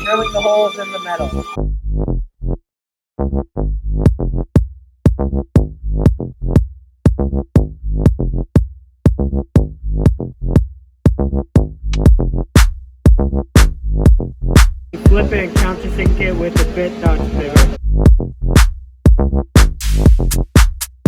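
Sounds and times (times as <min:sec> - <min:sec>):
electronic music with drum machine: 0:00.0 - 0:01.6, 0:15.0 - 0:17.8.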